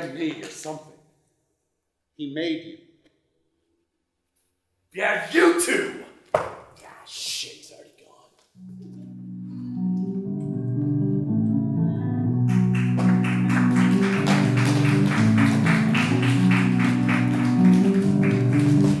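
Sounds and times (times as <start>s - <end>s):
percussive beat: 13.0s - 19.0s.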